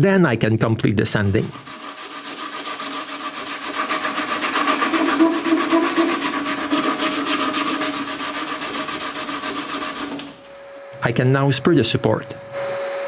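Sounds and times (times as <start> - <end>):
power sander on wood: 1.6 - 10.4.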